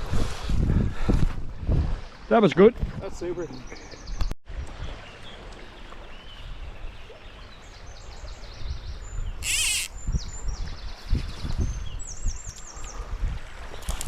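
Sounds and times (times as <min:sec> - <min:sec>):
wind rumbling on microphone: 0:00.0 - 0:14.0
small birds singing: 0:03.4 - 0:14.0
loud warbling bird call: 0:09.4 - 0:10.0.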